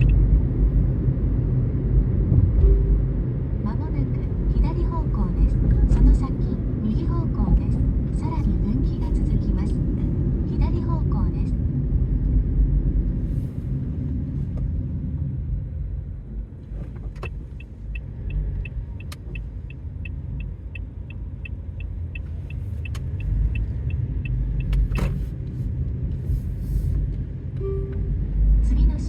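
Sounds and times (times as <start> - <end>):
car engine rumble from inside: 0.0 - 29.0
short high-pitched electronic beeps: 2.6 - 3.1.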